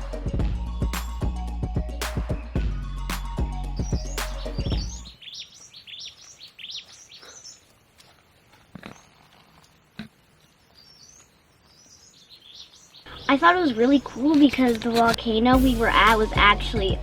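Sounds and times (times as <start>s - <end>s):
background music: 0.0s - 5.1s, 15.2s - 17.0s
small birds chirping: 0.0s - 17.0s.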